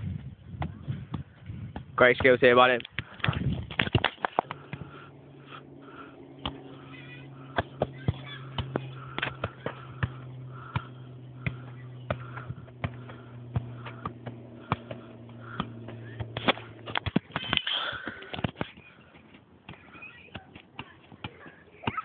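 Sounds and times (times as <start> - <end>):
steady low hum: 0.0 - 22.0
football being kicked: 6.4 - 18.9.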